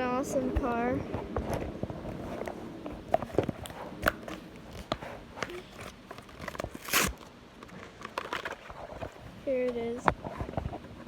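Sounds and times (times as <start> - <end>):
plastic packaging crinkling: 3.3 - 9.2.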